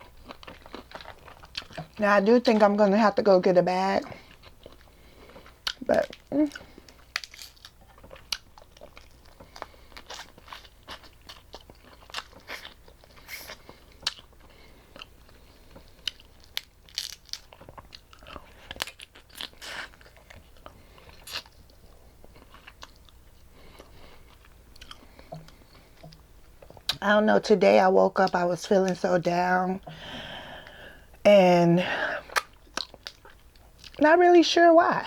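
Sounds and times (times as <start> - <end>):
person chewing and crunching: 0.0 - 2.8, 4.0 - 27.0, 32.2 - 34.0.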